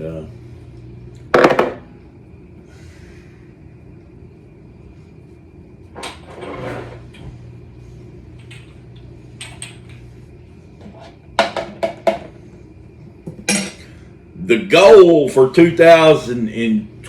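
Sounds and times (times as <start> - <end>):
dishes and utensils clinking: 13.3 - 13.9.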